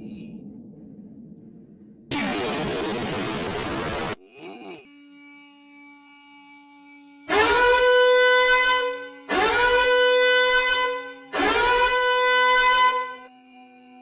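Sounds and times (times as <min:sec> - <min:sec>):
horn blaring: 0:07.3 - 0:13.3.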